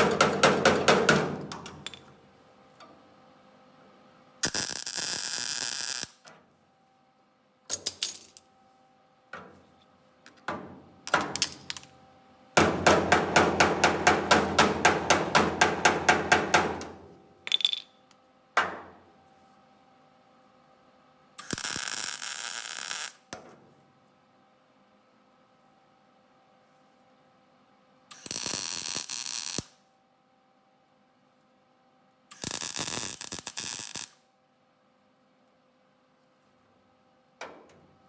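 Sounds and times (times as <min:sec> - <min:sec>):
hammer blows on sheet metal: 0:12.6 - 0:17.1.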